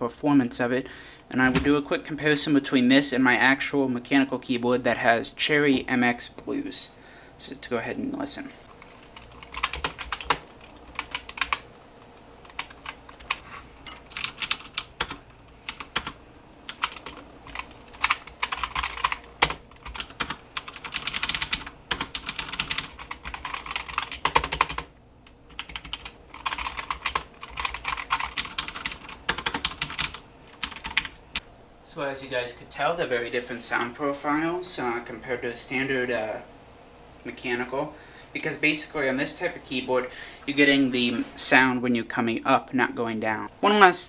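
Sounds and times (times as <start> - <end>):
membrane keyboard typing: 9.0 - 11.7, 12.4 - 24.9, 25.5 - 31.4
mechanical keyboard clicky typing: 9.1 - 11.6, 14.1 - 24.9, 25.5 - 31.2.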